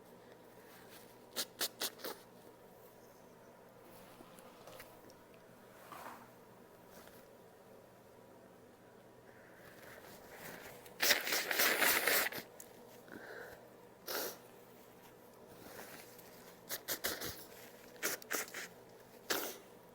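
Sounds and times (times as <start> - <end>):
short sniffs: 1.3 - 2.3, 11.0 - 12.5, 13.2 - 14.5, 16.7 - 18.7, 19.3 - 19.7
woman blowing nose: 11.0 - 12.5, 14.0 - 14.4, 19.3 - 19.7.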